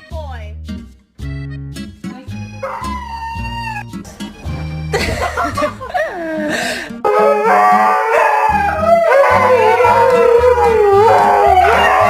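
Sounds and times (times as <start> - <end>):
background music with low beat: 0.0 - 6.3
falling vocal cry: 8.4 - 12.0.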